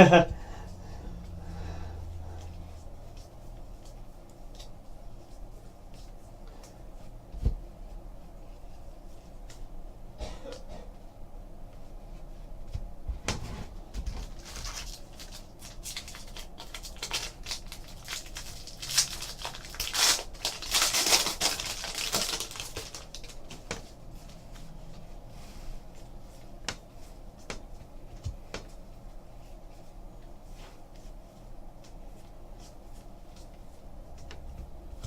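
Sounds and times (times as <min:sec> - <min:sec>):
card packs being torn open: 0:14.2 - 0:23.5
wrappers crinkling: 0:14.2 - 0:23.7.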